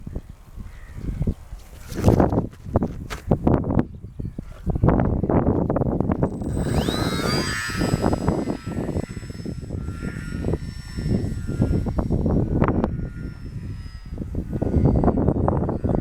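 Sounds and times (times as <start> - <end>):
wind buffeting on microphone: 0.0 - 16.0
small electric motor and propeller whining: 4.4 - 16.0.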